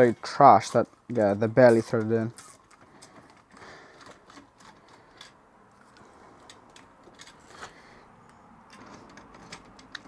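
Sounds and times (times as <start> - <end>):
small metal clicks and taps: 8.7 - 10.0.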